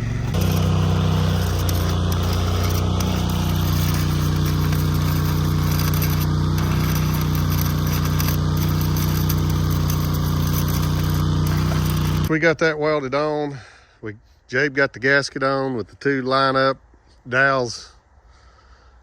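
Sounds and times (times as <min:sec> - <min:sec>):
welder engine running: 0:00.0 - 0:12.3
welding arc crackling: 0:00.0 - 0:12.3.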